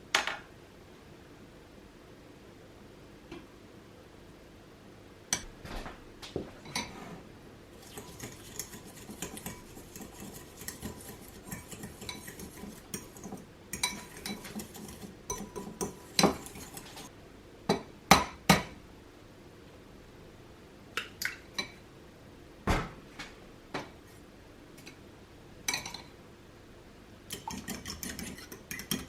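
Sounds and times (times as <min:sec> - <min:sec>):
metal fork clinking in bowl: 0:08.0 - 0:17.1, 0:27.3 - 0:29.0.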